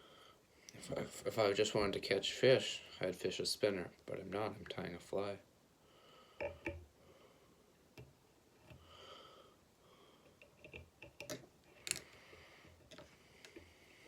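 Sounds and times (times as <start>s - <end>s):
soft breath or sniff: 12.0s - 14.0s.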